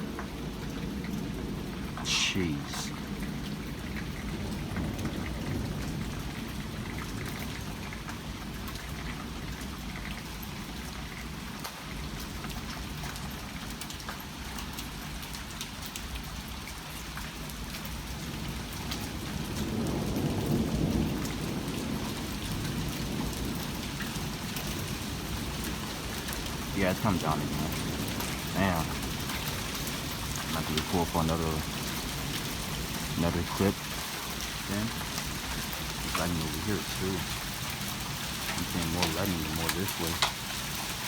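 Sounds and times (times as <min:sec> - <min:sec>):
heavy rain falling: 0:00.0 - 0:41.0
raindrops tapping: 0:00.0 - 0:41.0
low rumble of thunder: 0:03.0 - 0:09.2, 0:18.1 - 0:30.9.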